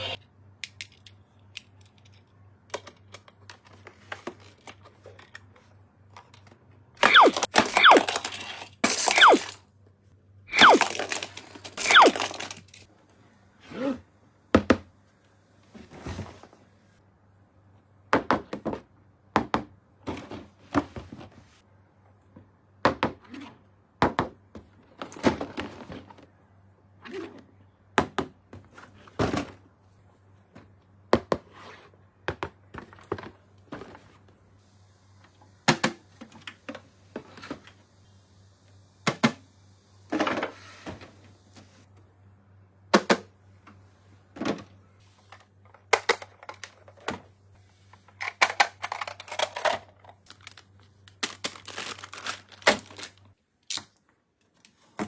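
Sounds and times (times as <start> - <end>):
packaging tearing and crinkling: 10.5 - 12.6, 48.9 - 53.9.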